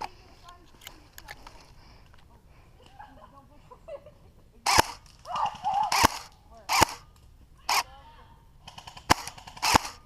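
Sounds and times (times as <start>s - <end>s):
airsoft gun shots: 4.7s - 7.0s, 8.7s - 10.0s.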